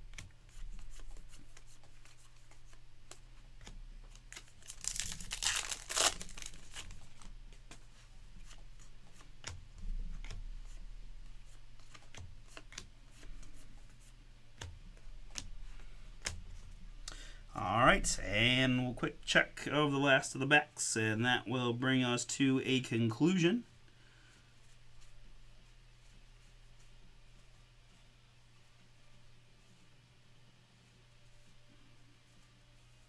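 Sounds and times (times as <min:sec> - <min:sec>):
trading cards being handled: 0:00.1 - 0:09.6
packaging tearing and crinkling: 0:04.4 - 0:07.2.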